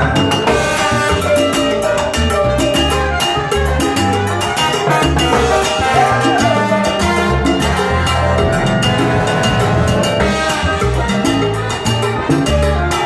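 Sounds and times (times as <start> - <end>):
bass line: 0.0 - 13.0
percussion: 0.0 - 13.0
salsa band playing live: 0.0 - 13.0
horns: 0.4 - 13.0.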